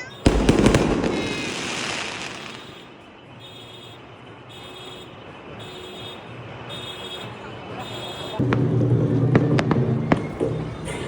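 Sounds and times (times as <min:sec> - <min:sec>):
outdoor background noise: 0:00.0 - 0:11.0
firework explosion: 0:00.2 - 0:03.0, 0:08.4 - 0:11.0.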